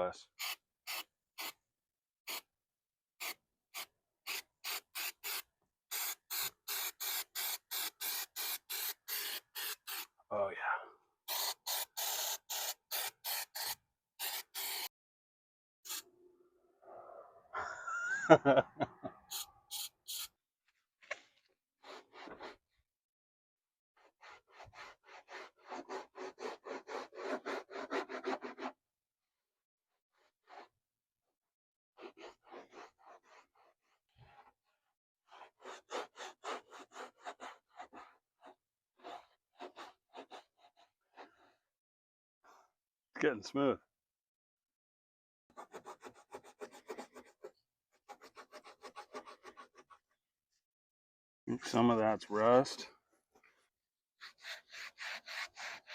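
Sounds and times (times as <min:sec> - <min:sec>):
hand scrubbing car paint: 0:03.2 - 0:10.2, 0:21.8 - 0:22.6, 0:24.0 - 0:28.8, 0:32.0 - 0:41.6, 0:45.6 - 0:50.0, 0:54.2 - 0:55.9.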